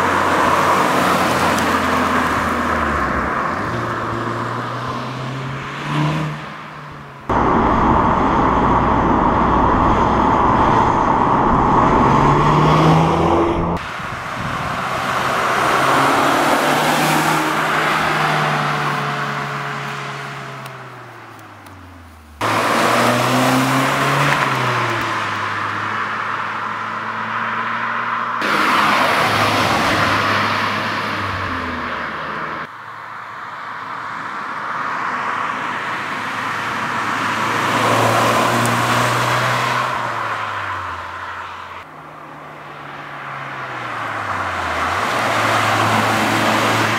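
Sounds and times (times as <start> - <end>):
car engine revving: 7.3 - 20.9, 22.4 - 32.7.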